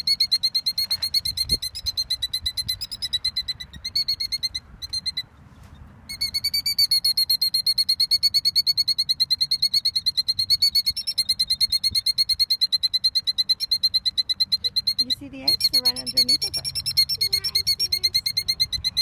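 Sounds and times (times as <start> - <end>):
killdeer alarm calls: 0.0 - 5.4, 6.1 - 19.0.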